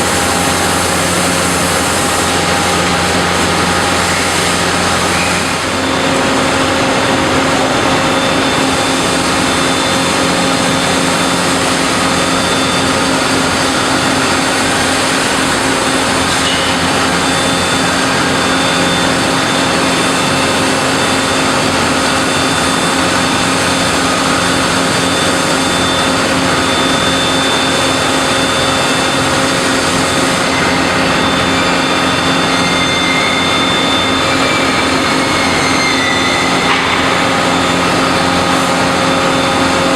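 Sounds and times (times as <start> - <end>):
factory machinery roaring: 0.0 - 39.9.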